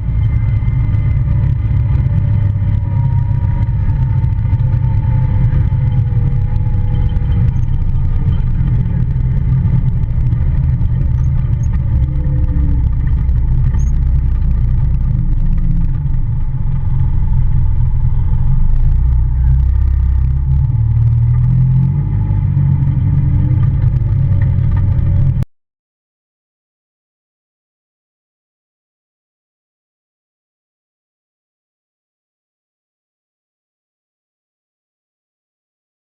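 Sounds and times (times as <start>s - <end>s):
engine whine: 0.0s - 25.5s
vehicle engine rumble: 0.0s - 25.5s.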